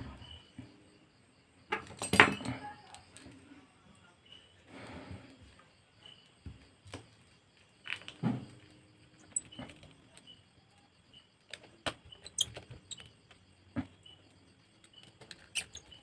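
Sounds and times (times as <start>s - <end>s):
small tools clicking and tapping: 9.2s - 10.3s, 14.8s - 16.0s.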